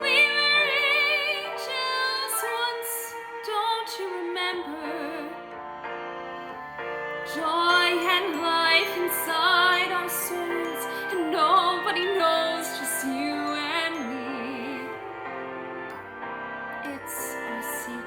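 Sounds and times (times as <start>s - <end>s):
woman singing with vibrato: 0.0s - 5.4s, 7.3s - 15.0s, 16.8s - 18.0s
sustained instrumental accompaniment: 0.0s - 18.0s.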